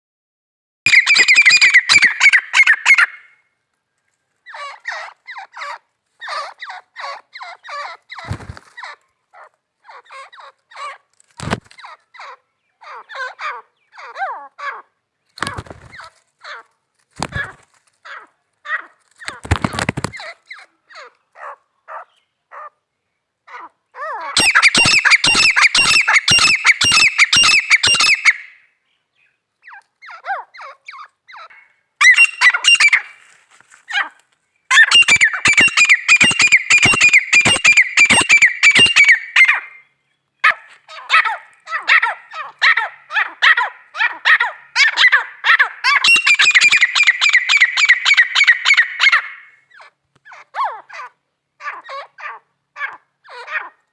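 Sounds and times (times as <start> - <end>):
francolin shrill calls: 0.9 - 3.4, 23.5 - 28.6, 29.7 - 33.2, 34.7 - 53.7.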